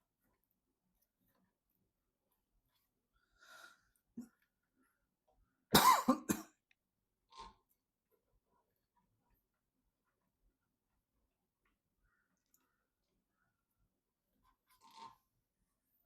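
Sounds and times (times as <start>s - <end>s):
person coughing: 5.8s - 6.6s.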